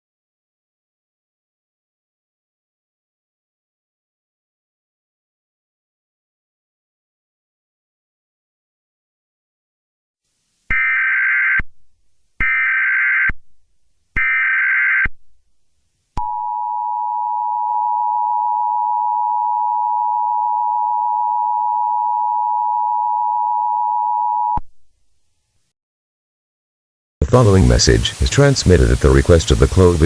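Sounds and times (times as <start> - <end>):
two-tone attention signal: 16.2 - 24.6.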